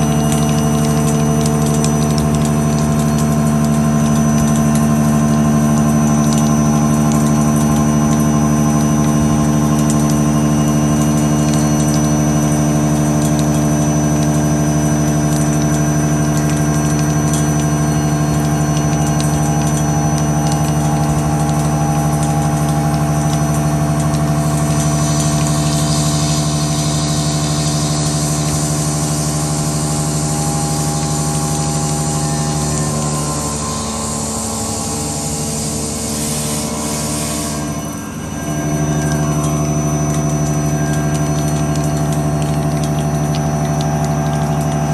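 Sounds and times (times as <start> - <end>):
machine motor and spindle hum: 0.0 - 44.9
thin high whine: 3.8 - 44.9
hiss: 24.3 - 39.2.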